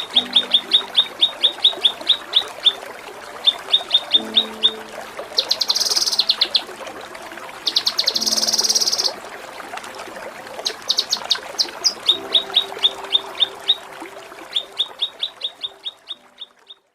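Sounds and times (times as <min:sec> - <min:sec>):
songbird trilling and chirping: 0:05.4 - 0:06.6, 0:07.7 - 0:09.2, 0:10.6 - 0:13.8.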